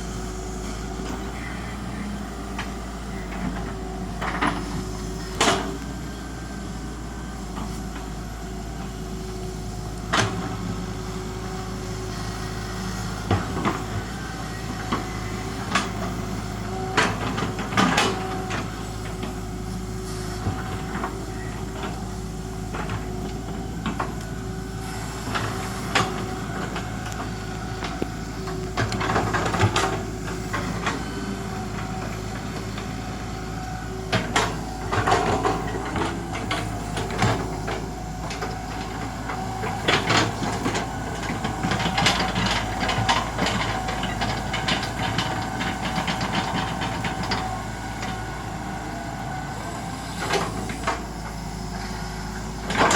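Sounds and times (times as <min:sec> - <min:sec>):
excavator diesel engine: 0:00.0 - 0:52.9
machine knocks and clanks: 0:34.1 - 0:48.2.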